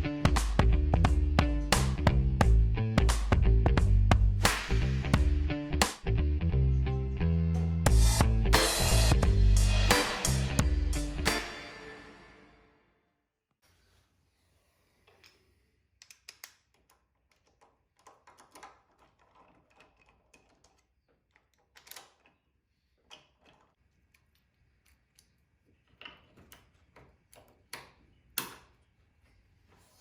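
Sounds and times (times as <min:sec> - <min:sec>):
small hard objects clicking and knocking: 0:16.0 - 0:28.7.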